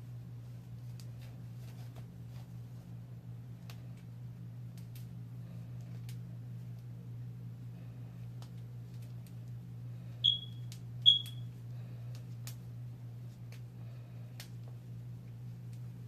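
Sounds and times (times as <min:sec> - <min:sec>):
steady low hum: 0:00.0 - 0:16.0
high electronic beeps: 0:10.2 - 0:10.5, 0:11.1 - 0:11.4.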